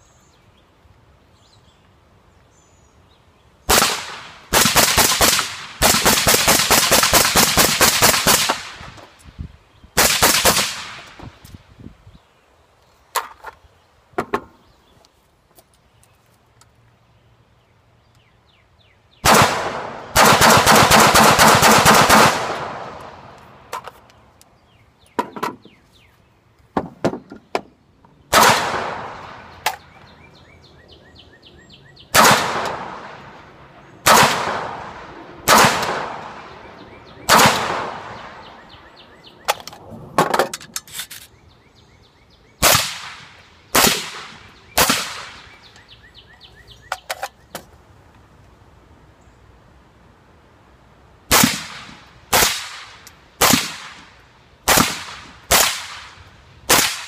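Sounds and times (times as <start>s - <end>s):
suppressed rifle shots: 3.7s - 9.0s, 19.2s - 23.9s, 28.3s - 29.9s, 32.1s - 33.2s, 34.1s - 36.5s
gunshot echo: 28.3s - 29.6s, 32.2s - 33.2s, 34.1s - 36.5s, 37.3s - 38.4s.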